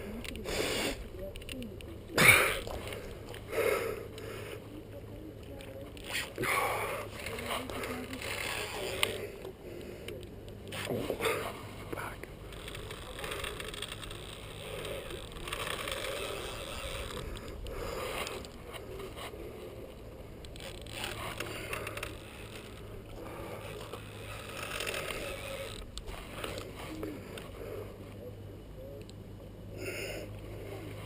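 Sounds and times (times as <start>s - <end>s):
fishing reel ratcheting: 6.0s - 9.3s, 12.5s - 19.3s, 20.4s - 26.7s.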